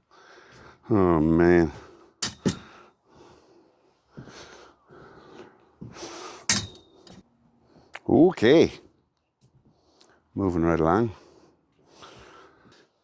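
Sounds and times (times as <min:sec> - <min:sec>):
heavy breathing and sighs: 0:01.7 - 0:06.5, 0:11.2 - 0:13.0.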